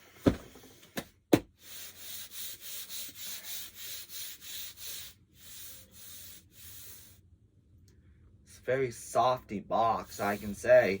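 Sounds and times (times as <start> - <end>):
scraping strokes on packaging: 1.6 - 7.2, 10.1 - 10.7.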